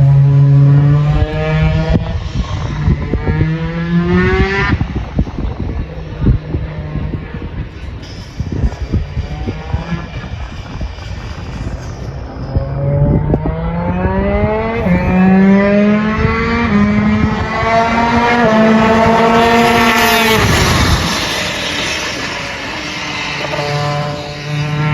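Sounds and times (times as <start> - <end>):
kart engine revving: 8.1 - 24.9.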